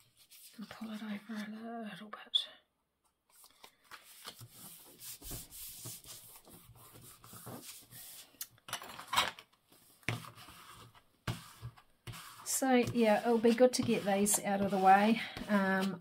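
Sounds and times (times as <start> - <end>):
hands rubbing paper: 0.1 - 1.0, 3.3 - 8.4, 9.8 - 16.0.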